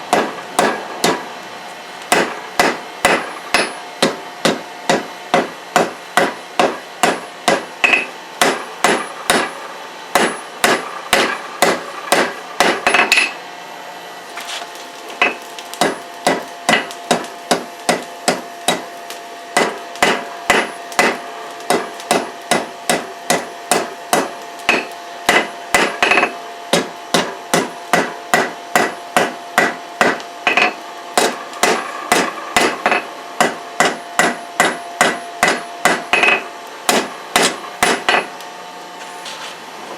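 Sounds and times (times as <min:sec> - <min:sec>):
hammer striking steel on anvil: 0:00.1 - 0:01.2, 0:02.1 - 0:13.4, 0:15.2 - 0:38.4
anvil ringing: 0:02.2 - 0:09.5, 0:10.2 - 0:13.4, 0:19.6 - 0:26.4, 0:27.2 - 0:38.3.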